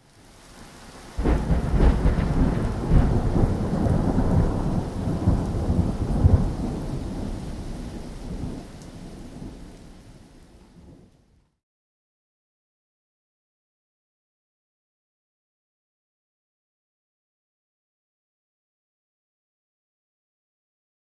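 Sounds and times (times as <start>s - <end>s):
rain: 0.0s - 11.4s
thunder rumbling: 1.2s - 10.0s.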